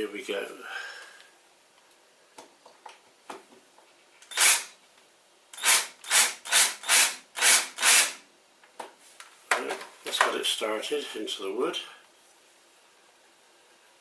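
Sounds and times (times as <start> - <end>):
screw rasping into wood: 4.3 - 4.7, 5.6 - 8.2.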